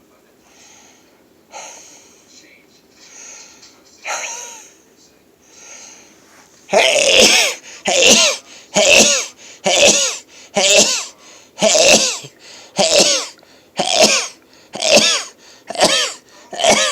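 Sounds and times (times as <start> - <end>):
person sneezing loudly: 6.7 - 16.9.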